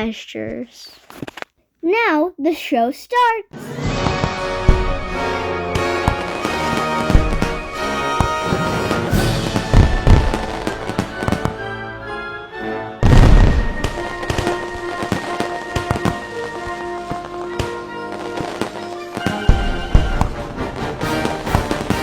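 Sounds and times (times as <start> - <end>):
fireworks booming: 3.6 - 12.0, 13.0 - 22.0
music with long held notes: 3.6 - 22.0
fireworks crackling bangs: 3.7 - 11.9, 13.0 - 22.0.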